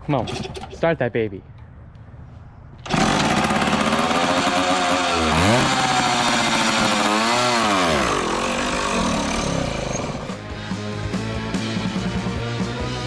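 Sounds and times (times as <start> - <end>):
dirt bike engine revving: 2.8 - 13.0.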